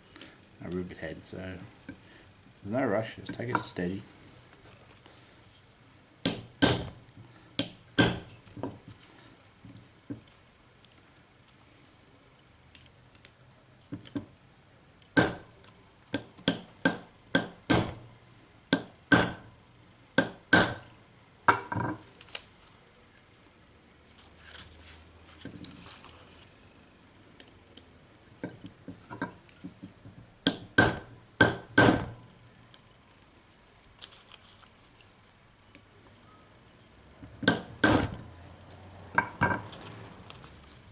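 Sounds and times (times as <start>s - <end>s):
hammer tapping metal punch: 6.2s - 8.8s, 15.2s - 15.6s, 16.2s - 18.1s, 18.7s - 19.5s, 20.2s - 21.9s, 30.4s - 32.3s, 37.4s - 38.4s.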